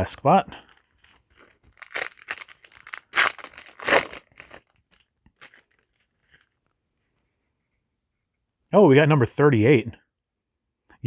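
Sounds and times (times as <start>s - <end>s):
foil wrapper tearing and crinkling: 1.0s - 4.7s, 5.4s - 5.8s.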